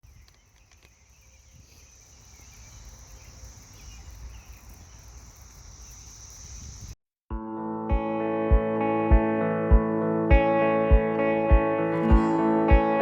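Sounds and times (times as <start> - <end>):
cicadas droning: 0.0 - 7.0.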